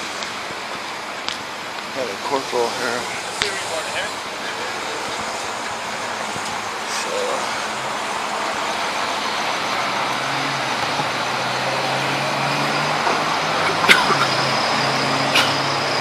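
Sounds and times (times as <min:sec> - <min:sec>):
cars going by: 0:00.0 - 0:16.0.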